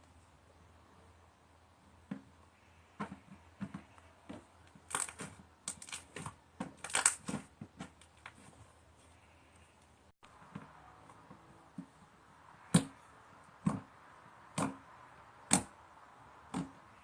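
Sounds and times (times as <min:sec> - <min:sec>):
slime crackling and popping: 0:04.9 - 0:06.2.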